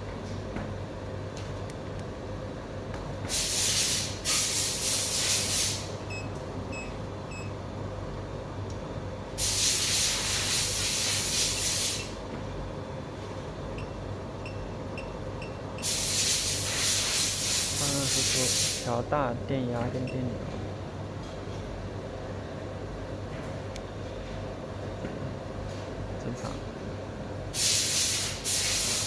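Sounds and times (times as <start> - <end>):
loud hiss bursts: 3.3 - 6.0, 9.4 - 12.2, 15.8 - 18.9, 27.5 - 29.0.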